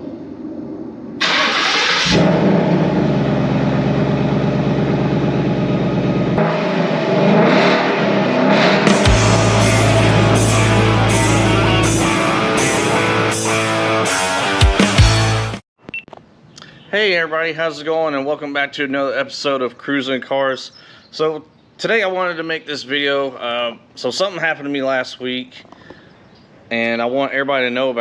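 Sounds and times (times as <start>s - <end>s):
rock music: 6.4s - 15.6s.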